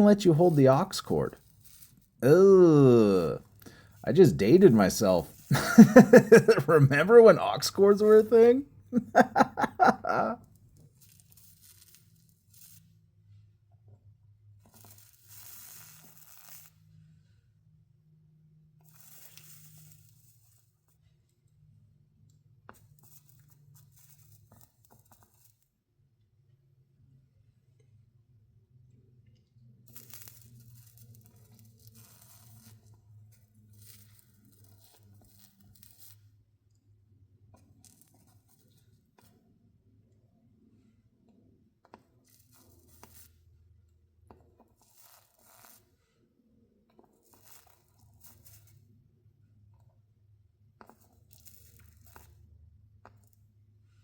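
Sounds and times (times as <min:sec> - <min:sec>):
soldering tip scratching: 0:00.3 - 0:02.2, 0:11.0 - 0:12.9, 0:14.6 - 0:16.8, 0:18.9 - 0:20.7, 0:29.9 - 0:36.3, 0:42.3 - 0:43.4, 0:44.7 - 0:45.9, 0:47.0 - 0:48.8, 0:50.8 - 0:52.4
flux sizzling and crackling: 0:14.8 - 0:16.7.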